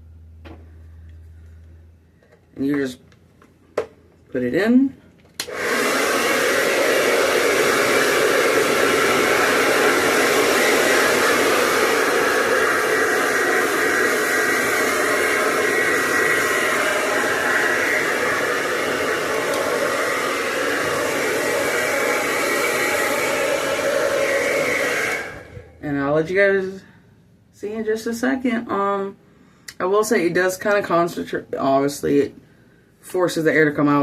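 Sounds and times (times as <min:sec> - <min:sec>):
hair dryer blowing air: 0:05.4 - 0:26.1.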